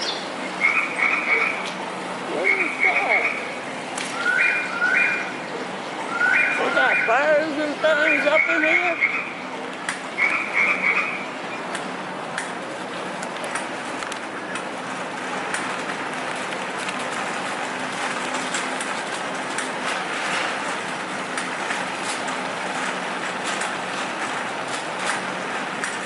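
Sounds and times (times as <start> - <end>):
rolling rattle and clatter: 11.9 - 26.0.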